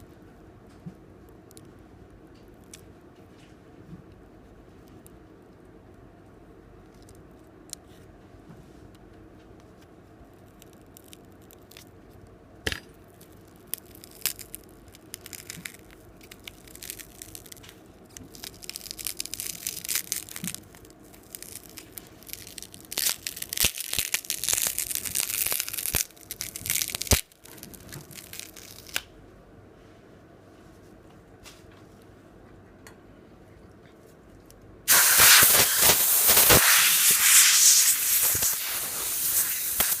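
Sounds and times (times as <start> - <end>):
tearing noise: 13.6 - 29.0, 34.9 - 40.0.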